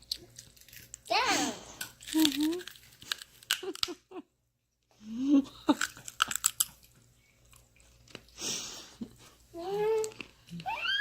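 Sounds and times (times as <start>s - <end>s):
child chewing raw carrot: 5.5s - 8.4s
toddler babbling: 9.6s - 11.0s.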